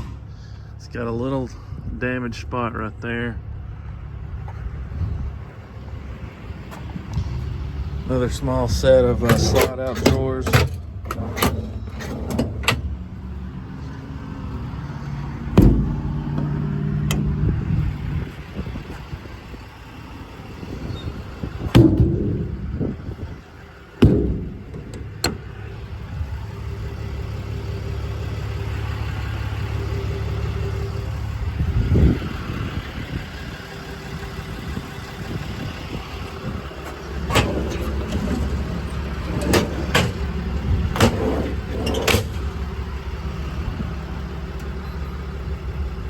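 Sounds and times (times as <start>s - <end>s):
diesel truck engine idling: 0.0s - 46.0s
metal doors and drawers clattering: 8.2s - 17.8s, 20.9s - 26.0s, 36.7s - 42.9s.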